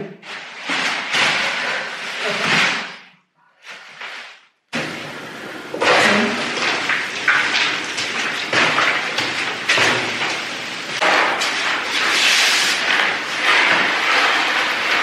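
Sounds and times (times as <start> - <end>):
floor underlay rustling: 0.0 - 5.0, 5.8 - 15.0.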